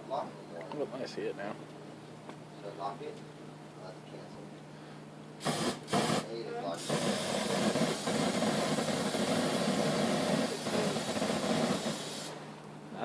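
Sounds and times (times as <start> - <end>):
gas hissing from lighter: 5.4 - 12.5.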